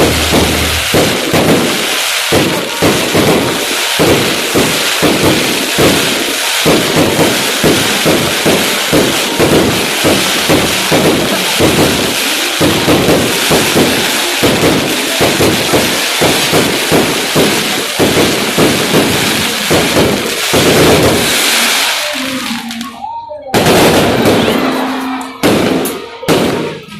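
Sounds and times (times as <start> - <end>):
fireworks dull thumps: 0.0 - 1.7
fireworks crackling hiss: 0.0 - 23.0, 23.6 - 26.9.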